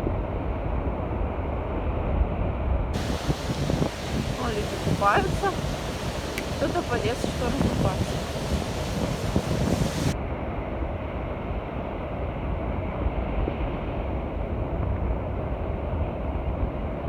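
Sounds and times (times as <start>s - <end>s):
wind rumbling on microphone: 0.0s - 17.0s
sea surf: 3.0s - 10.2s.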